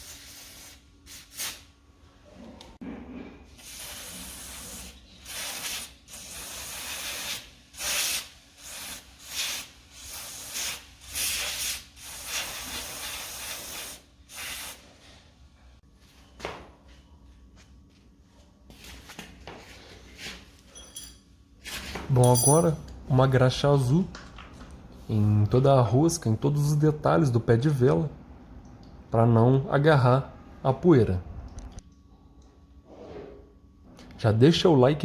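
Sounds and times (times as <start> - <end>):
aerosol spray hissing: 3.6 - 14.8.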